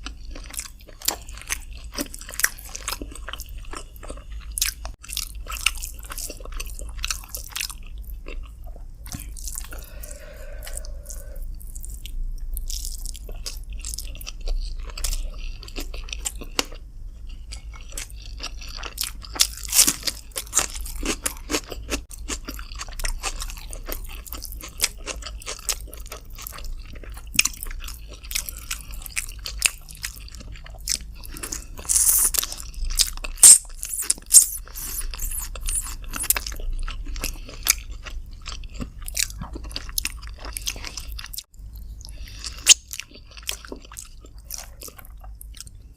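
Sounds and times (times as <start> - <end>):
close chewing and biting food: 0.0 - 45.9.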